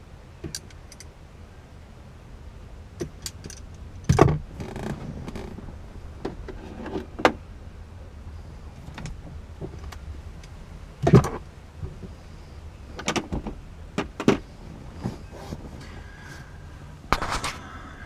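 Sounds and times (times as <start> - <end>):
metallic clicks of hand tools: 0.4 - 1.1.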